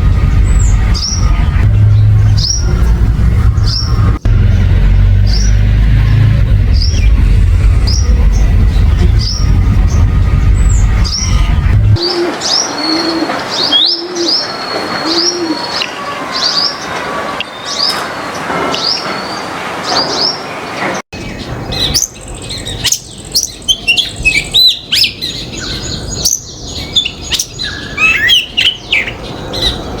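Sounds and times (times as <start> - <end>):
birds chirping: 0.0 - 30.0
low cooing bird: 12.0 - 15.8.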